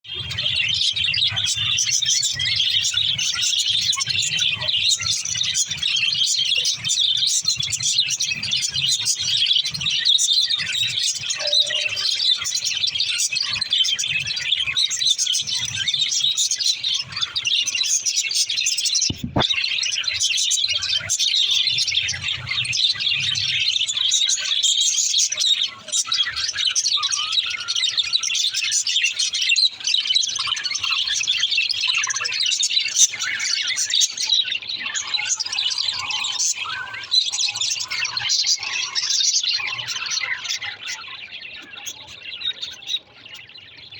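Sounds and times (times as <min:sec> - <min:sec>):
budgerigars chattering and chirping: 0:00.2 - 0:43.9.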